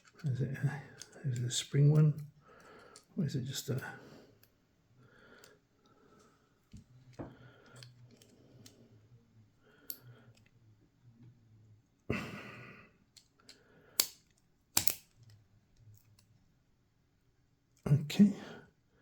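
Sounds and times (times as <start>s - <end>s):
lock pick clicking and scraping: 0.9s - 3.1s, 13.1s - 16.3s
sharp clicks: 14.8s - 15.1s.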